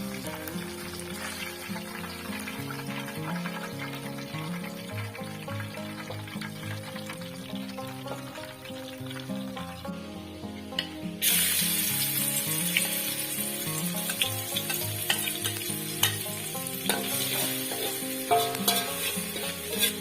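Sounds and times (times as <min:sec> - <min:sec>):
food sizzling in hot oil: 0:00.0 - 0:20.0
spatula scraping a pan: 0:10.8 - 0:20.0.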